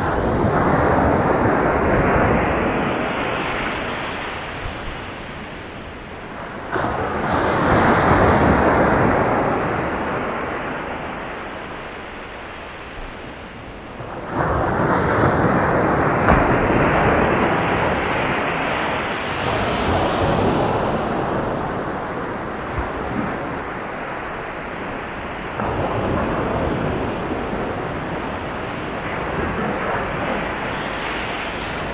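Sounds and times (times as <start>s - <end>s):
sea waves crashing on beach: 0.0s - 31.9s.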